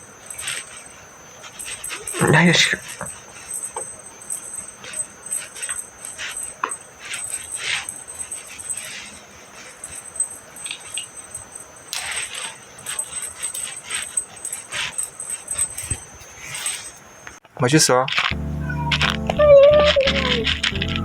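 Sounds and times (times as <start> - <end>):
cats meowing and whining: 18.4 - 21.0.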